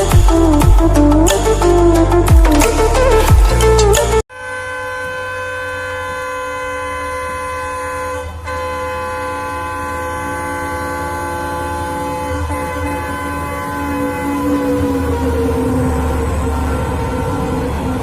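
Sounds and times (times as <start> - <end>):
locomotive horn blast: 0.0 - 18.0
train rumbling past: 9.8 - 18.0.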